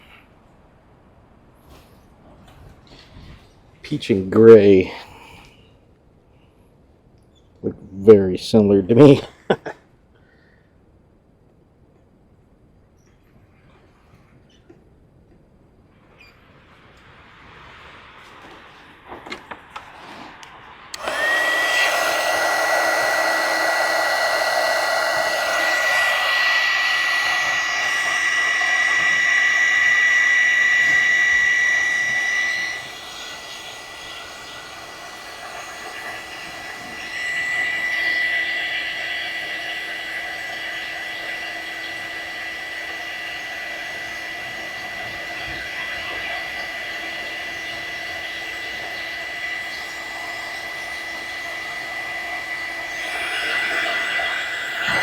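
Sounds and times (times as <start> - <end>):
heat gun blowing and whining: 20.9 - 55.0
heat gun switch click: 21.0 - 42.0.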